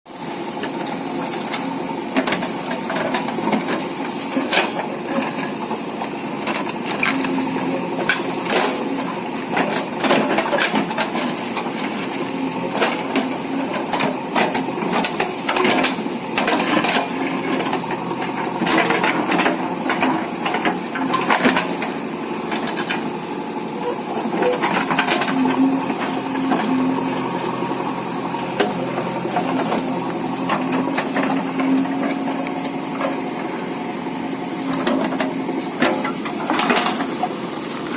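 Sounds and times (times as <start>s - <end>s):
diesel engine running: 0.1s - 37.9s
machine clanks and knocks: 34.7s - 37.2s.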